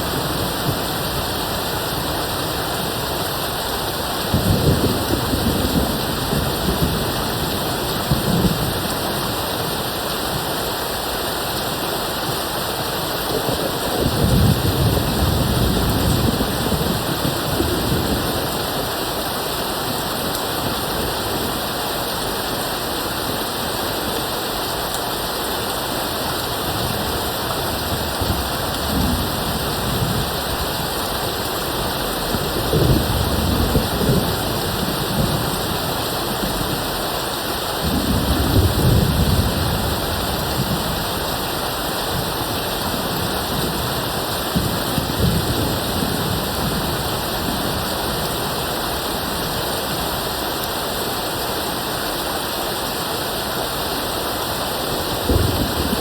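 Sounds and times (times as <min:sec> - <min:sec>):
steady rain: 0:00.0 - 0:56.0
distant thunder rumbling: 0:04.1 - 0:09.2, 0:13.2 - 0:19.0, 0:26.8 - 0:37.0, 0:55.1 - 0:56.0.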